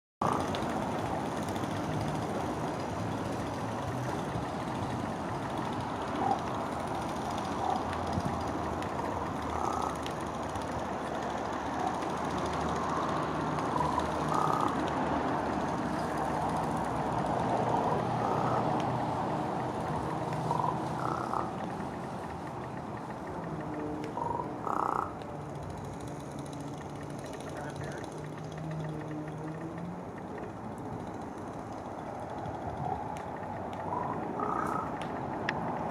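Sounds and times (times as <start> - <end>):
raven croaking: 0.2 - 1.2, 5.4 - 25.3, 32.0 - 35.9.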